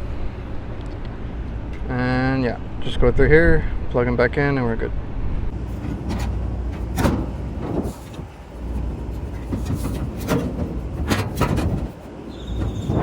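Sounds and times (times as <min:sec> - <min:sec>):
wind rumbling on microphone: 0:05.0 - 0:13.0
sharp clicks and knocks: 0:05.6 - 0:13.0.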